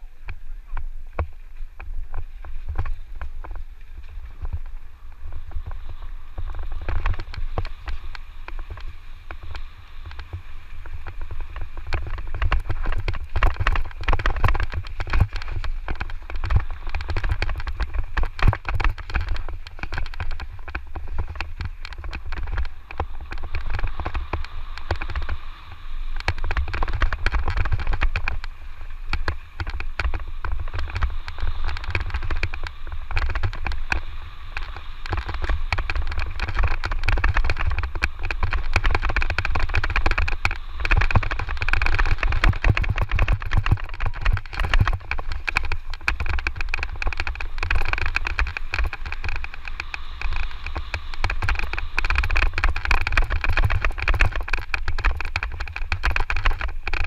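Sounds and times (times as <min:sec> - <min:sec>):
wind rumbling on microphone: 0:00.0 - 0:57.0
bike rattling on rocky ground: 0:01.2 - 0:57.0.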